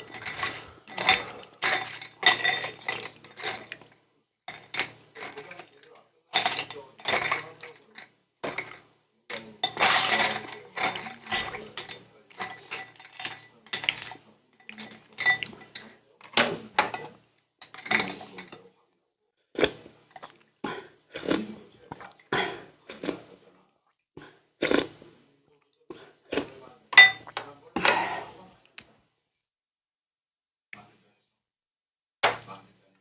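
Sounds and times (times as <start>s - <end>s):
dishes and utensils clattering: 0.0s - 18.7s, 26.4s - 28.4s, 32.2s - 32.6s
food crunching: 24.6s - 25.0s.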